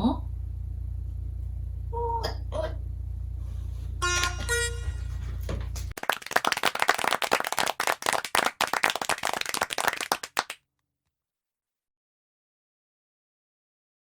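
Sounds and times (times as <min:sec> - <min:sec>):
hands clapping quickly: 0:05.9 - 0:10.6.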